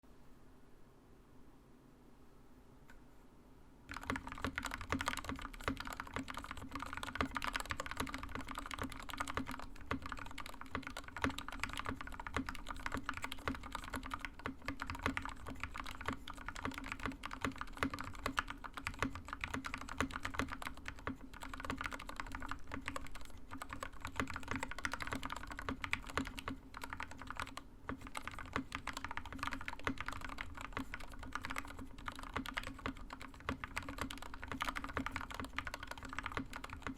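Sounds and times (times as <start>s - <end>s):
mechanical keyboard typing: 3.9s - 36.9s.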